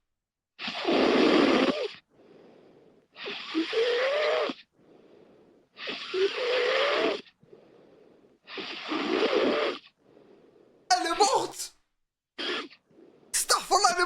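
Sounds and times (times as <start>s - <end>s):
woman snoring: 0.6s - 10.9s
quiet breathing: 2.0s - 3.5s, 4.6s - 6.0s, 7.2s - 9.0s, 9.8s - 11.2s, 12.7s - 13.6s.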